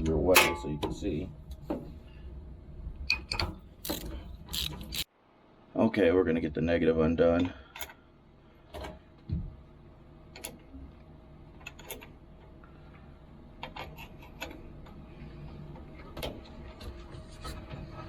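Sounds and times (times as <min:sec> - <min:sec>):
metallic ratchet clicks: 0:03.8 - 0:05.1.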